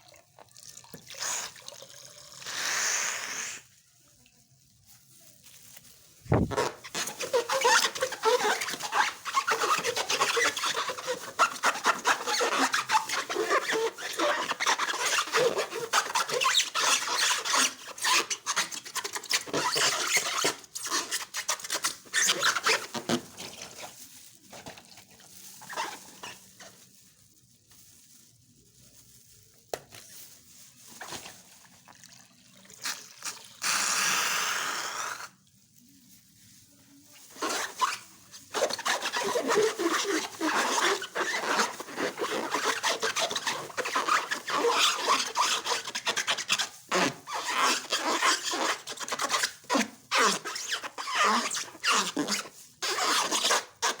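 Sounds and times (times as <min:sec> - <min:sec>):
slime squishing and crackling: 0:04.9 - 0:31.9.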